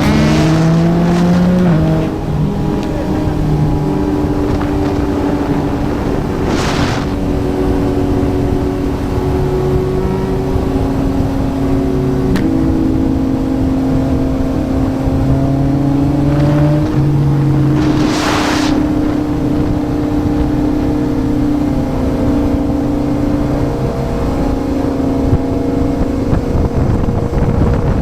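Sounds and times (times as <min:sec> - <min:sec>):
motorcycle engine running: 0:00.0 - 0:28.0
brief whooshes: 0:17.6 - 0:19.2.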